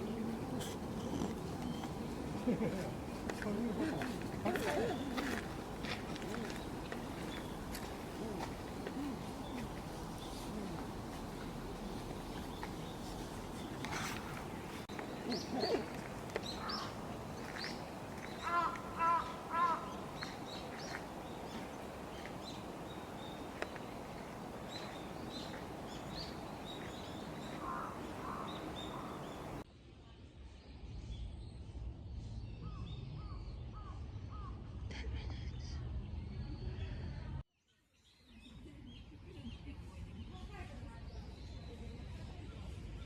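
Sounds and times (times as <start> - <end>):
songbirds chirping: 0.0 - 29.6
short falling bird calls: 4.0 - 29.6
crow cawing: 16.4 - 29.6.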